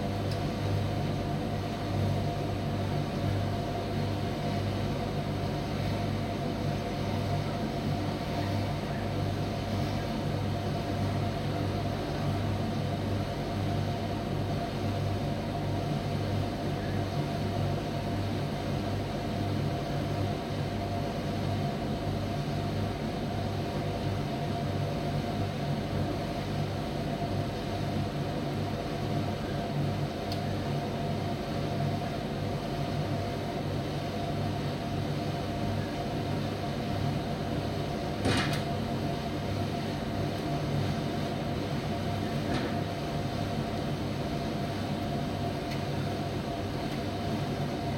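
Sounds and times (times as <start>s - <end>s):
tumble dryer humming: 36.2s - 47.9s.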